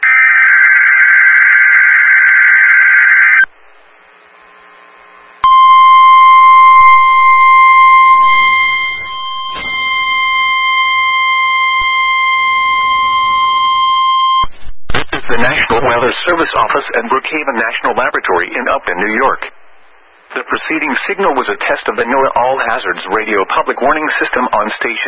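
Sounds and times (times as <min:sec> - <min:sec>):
steady electronic alarm tone: 0:05.4 - 0:14.5
warbling data screech: 0:05.5 - 0:14.8.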